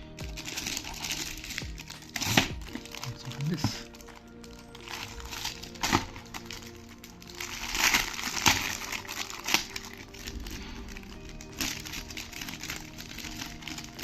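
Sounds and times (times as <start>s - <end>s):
packaging crinkling and rustling: 0.0s - 14.0s
soft background music: 0.0s - 14.0s.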